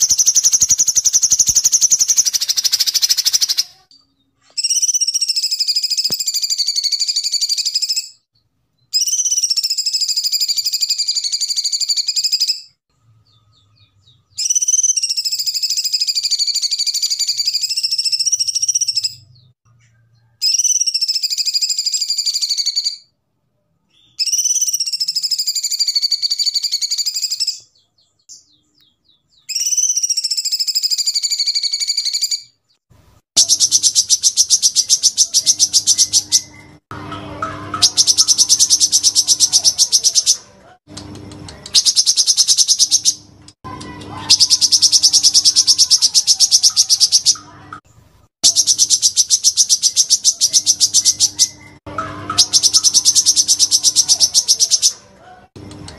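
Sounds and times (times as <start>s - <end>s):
warbling whistled bird song: 0.0s - 3.7s, 4.6s - 12.8s, 13.8s - 19.6s, 20.3s - 23.1s, 23.9s - 32.6s, 33.4s - 36.8s, 37.7s - 40.4s, 41.7s - 43.2s, 44.3s - 47.4s, 48.4s - 55.0s
fast rattling bird trills: 0.0s - 3.9s, 4.6s - 8.2s, 9.0s - 12.7s, 14.4s - 19.2s, 20.4s - 23.0s, 29.5s - 32.5s, 33.4s - 36.8s, 37.6s - 40.4s, 41.6s - 43.2s, 43.8s - 47.6s, 48.4s - 55.0s.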